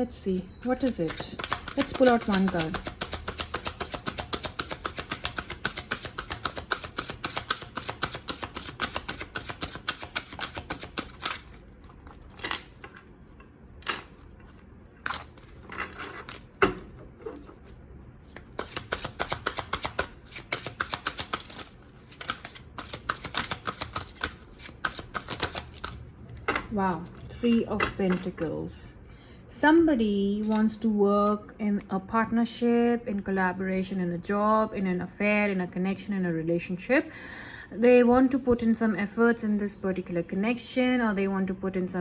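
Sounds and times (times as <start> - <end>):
cards being shuffled by hand: 0.7 - 12.7, 13.9 - 26.0.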